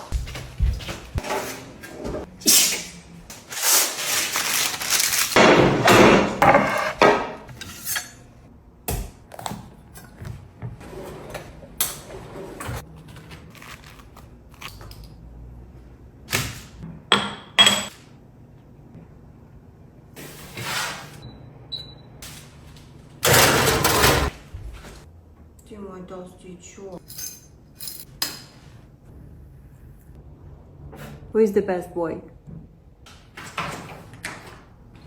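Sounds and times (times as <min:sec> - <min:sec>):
utensils and dishes clattering: 0:17.1 - 0:17.9, 0:23.2 - 0:24.3.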